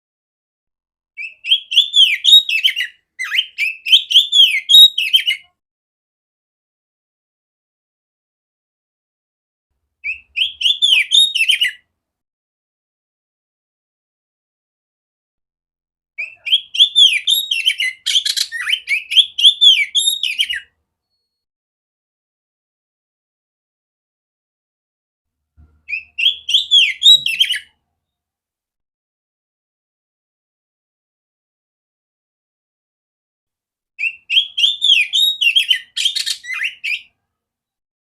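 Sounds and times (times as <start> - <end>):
bird singing whistled notes: 1.2 - 5.5, 10.0 - 11.8, 16.2 - 21.5, 25.9 - 27.8, 34.0 - 37.1.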